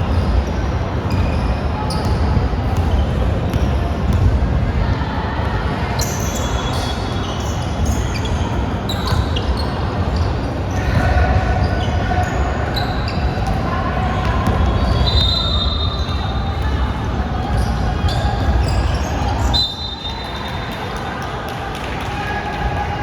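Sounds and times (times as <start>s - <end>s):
players' voices: 0.0s - 23.0s.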